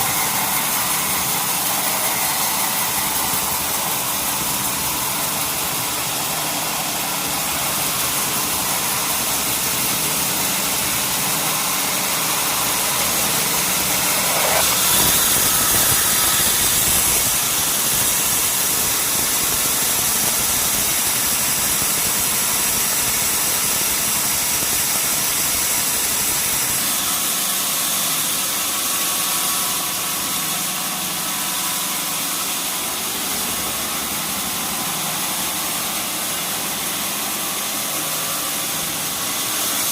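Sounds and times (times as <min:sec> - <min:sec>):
sawmill machinery droning: 0:00.0 - 0:39.9
rising whine: 0:10.6 - 0:17.8.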